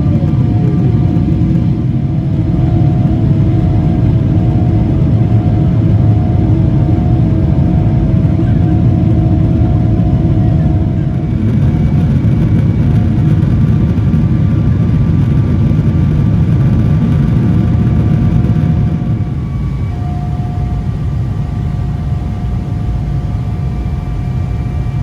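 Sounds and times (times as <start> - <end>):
jet engine cabin rumble: 0.0 - 25.0
thin steady tones: 18.8 - 25.0.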